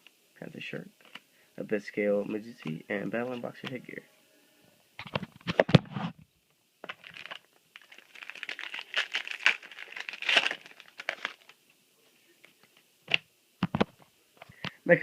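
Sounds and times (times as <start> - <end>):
card pack wrapper crinkling and tearing: 6.8 - 11.6.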